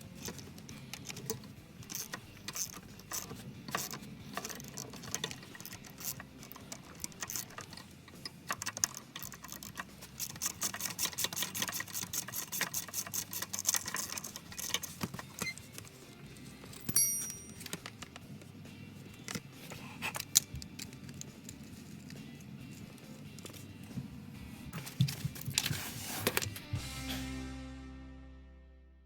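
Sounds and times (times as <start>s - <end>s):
rapid irregular clicking: 0.0s - 16.1s.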